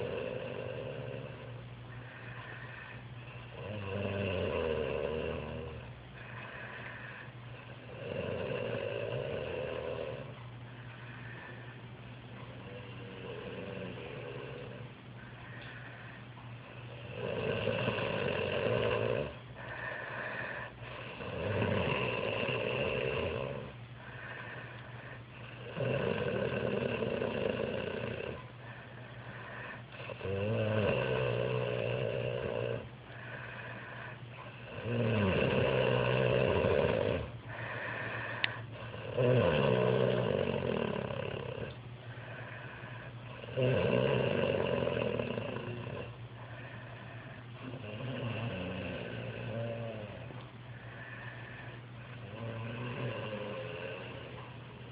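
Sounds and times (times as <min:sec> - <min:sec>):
man snoring: 0:00.0 - 0:10.3, 0:12.6 - 0:14.8, 0:16.7 - 0:54.8
quiet breathing: 0:00.0 - 0:54.9.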